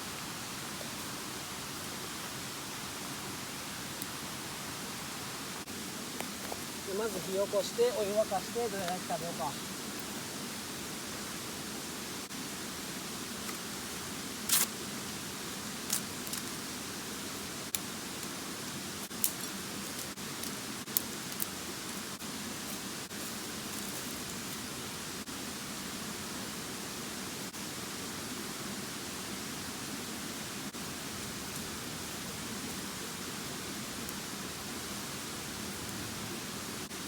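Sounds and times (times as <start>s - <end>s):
river rushing: 0.0s - 12.4s.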